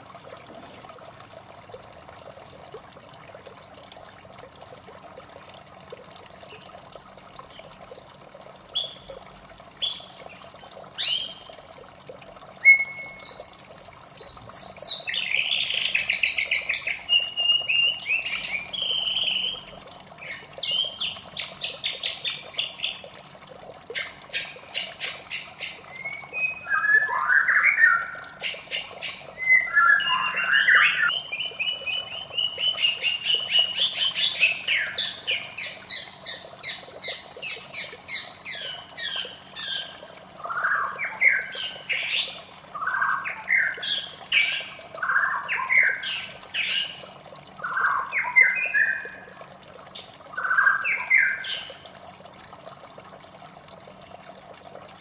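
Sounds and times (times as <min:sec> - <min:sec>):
songbird singing: 0:12.6 - 0:23.0, 0:24.0 - 0:47.0, 0:47.6 - 0:49.3, 0:49.9 - 0:51.8.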